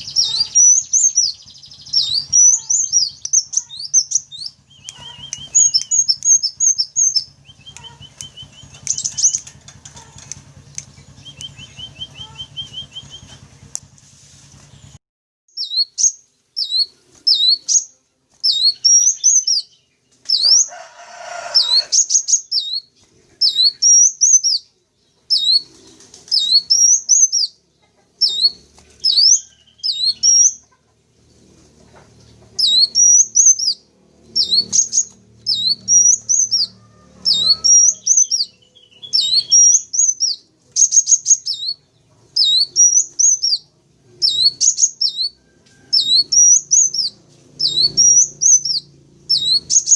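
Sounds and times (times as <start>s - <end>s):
bird song whistled notes: 0.0s - 9.4s, 10.7s - 13.8s, 14.8s - 20.7s, 21.4s - 27.6s, 28.2s - 30.6s, 32.6s - 49.9s.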